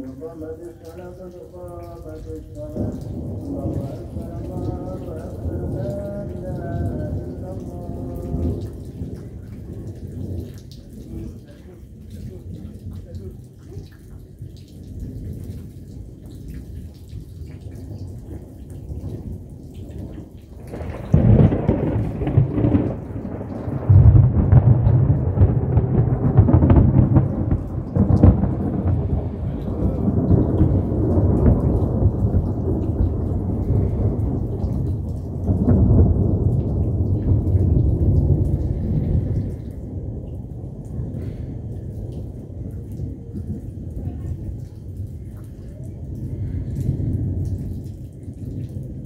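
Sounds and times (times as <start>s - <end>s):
low thunder rumbles: 0.0s - 49.0s
steady rain: 0.0s - 49.0s
thunder crack: 1.5s - 11.4s, 18.3s - 45.0s.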